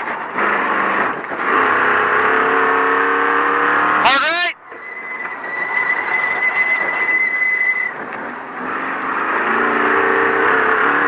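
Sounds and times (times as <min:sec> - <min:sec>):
truck engine revving: 0:00.0 - 0:11.0
tyres on dirt: 0:00.0 - 0:11.0
high squeal: 0:04.7 - 0:10.8.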